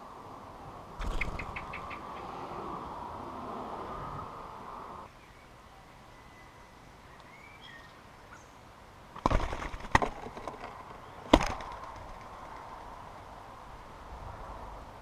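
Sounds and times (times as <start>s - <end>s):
faint bird chirps: 5.1s - 8.6s.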